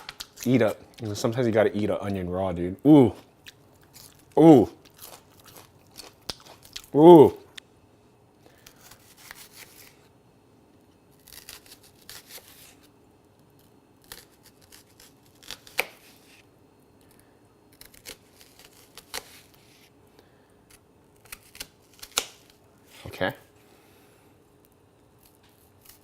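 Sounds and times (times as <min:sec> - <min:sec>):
knife slicing onion: 0:11.2 - 0:12.9.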